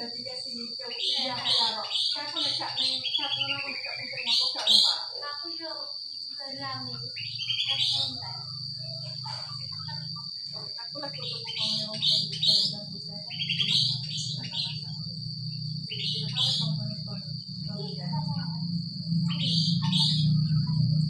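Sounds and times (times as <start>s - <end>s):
bulbul singing: 0.0s - 21.0s
low steady hum: 6.4s - 21.0s
steady high whine: 8.0s - 21.0s.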